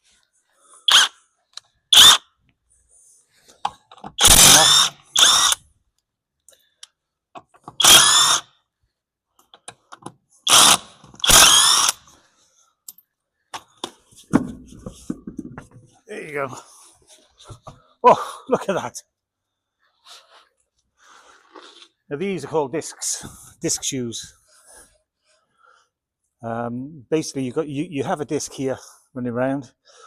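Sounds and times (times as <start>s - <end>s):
power drill spinning out bolts: 0.9s - 1.2s, 1.9s - 2.2s, 4.1s - 5.6s, 7.7s - 8.5s, 10.4s - 12.2s.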